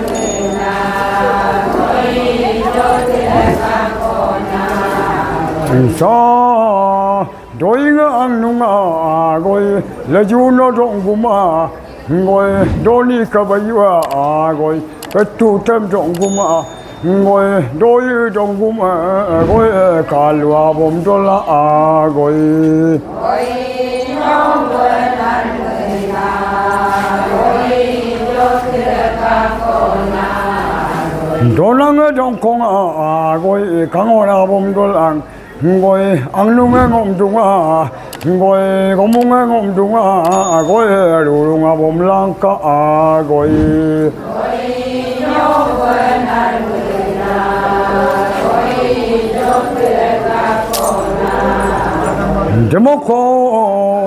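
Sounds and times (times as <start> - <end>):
voices chanting long held notes: 0.0 - 13.7, 17.0 - 54.0.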